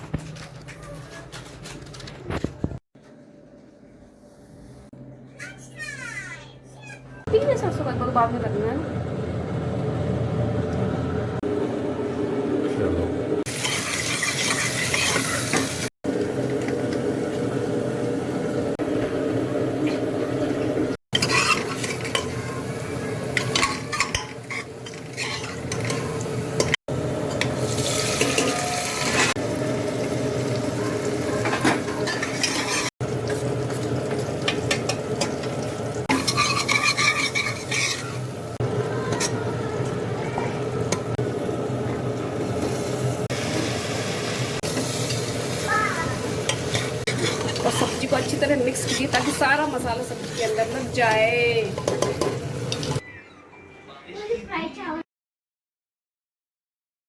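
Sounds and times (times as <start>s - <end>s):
spoon scraping a pan: 13.5s - 15.8s, 21.1s - 26.8s, 28.0s - 29.4s, 31.4s - 38.5s, 46.4s - 53.0s
vegetables sizzling in a pan: 13.5s - 18.6s, 21.2s - 39.4s, 40.6s - 53.0s.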